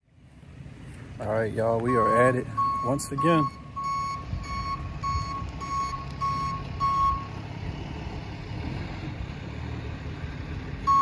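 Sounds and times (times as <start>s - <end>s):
vehicle backup alarm beeping: 1.8s - 7.4s.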